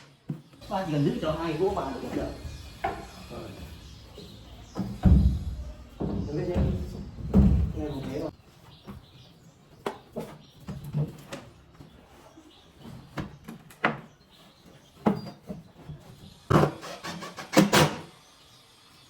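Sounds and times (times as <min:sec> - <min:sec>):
wooden boards knocking: 0:01.7 - 0:03.9, 0:04.6 - 0:08.3.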